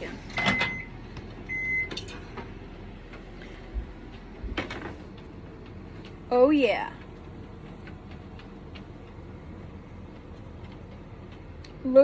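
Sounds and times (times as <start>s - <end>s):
low steady hum: 0.0s - 12.0s
microwave beep: 0.3s - 2.4s.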